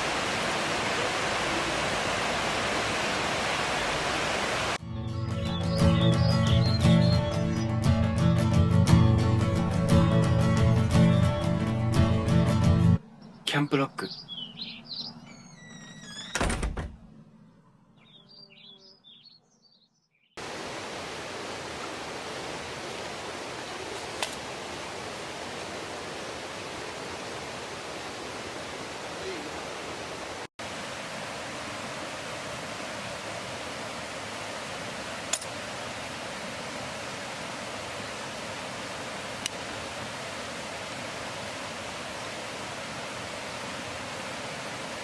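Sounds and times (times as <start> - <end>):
mountain stream rushing: 0.0 - 4.8, 20.4 - 45.0
bird chirps: 13.2 - 15.8, 18.0 - 20.4.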